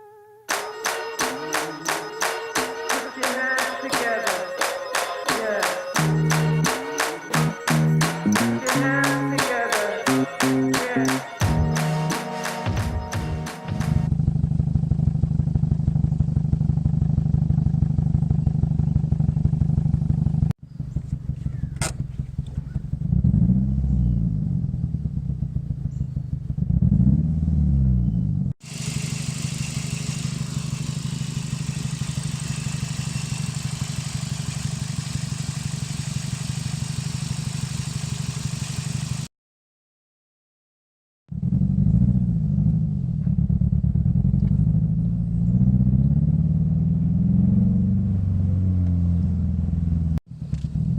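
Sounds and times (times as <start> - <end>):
car engine idling roughly: 28.6 - 39.3.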